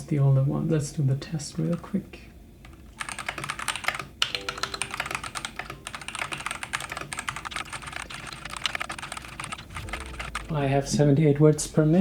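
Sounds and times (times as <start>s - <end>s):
fast typing on mechanical keyboard: 2.6s - 10.6s.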